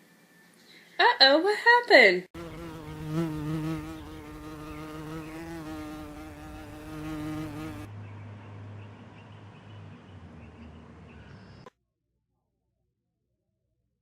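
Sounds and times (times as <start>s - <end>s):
buzzing drone: 2.4s - 7.9s.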